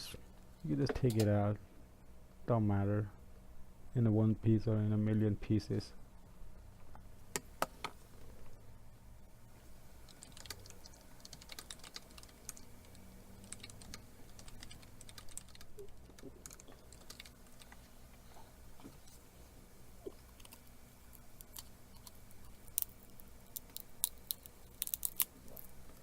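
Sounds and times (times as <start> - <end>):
faint clicks and crackles: 20.0 - 26.0.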